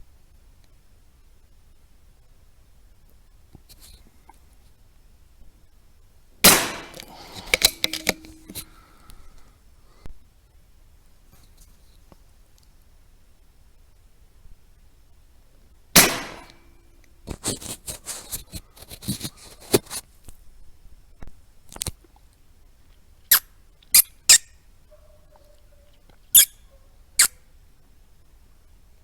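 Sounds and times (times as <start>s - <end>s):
sharp crack: 6.4s - 9.1s, 16.0s - 18.3s
rats squeaking: 25.3s - 27.4s.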